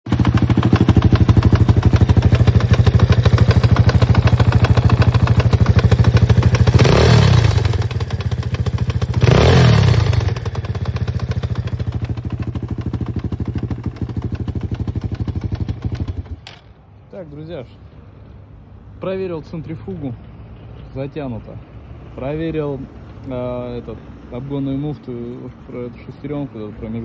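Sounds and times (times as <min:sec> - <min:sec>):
motorbike engine idling with knock: 0:00.1 - 0:06.9, 0:10.1 - 0:16.8
engine revs rising: 0:06.8 - 0:07.9, 0:09.2 - 0:10.4.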